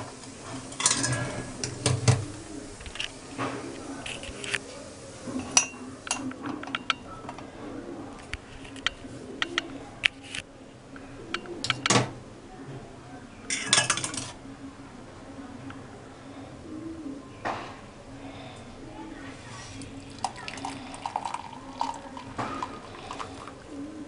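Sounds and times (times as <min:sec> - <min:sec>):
kitchen utensils clinking: 0:00.0 - 0:03.5, 0:05.3 - 0:07.4, 0:13.5 - 0:14.4.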